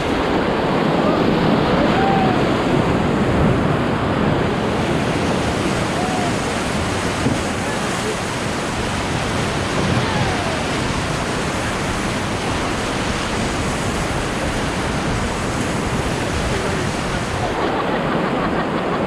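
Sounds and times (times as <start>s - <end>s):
rushing whitewater roar: 0.0s - 19.0s.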